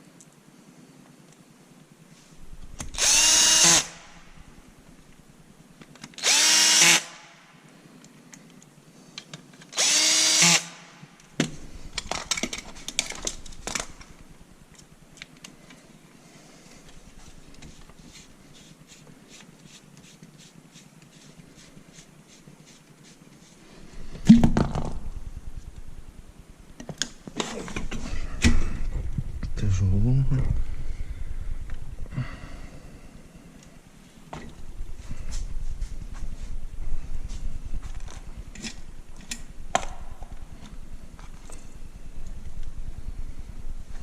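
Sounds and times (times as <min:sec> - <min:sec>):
power drill whining: 0:02.9 - 0:04.1, 0:06.2 - 0:07.2, 0:09.7 - 0:10.8.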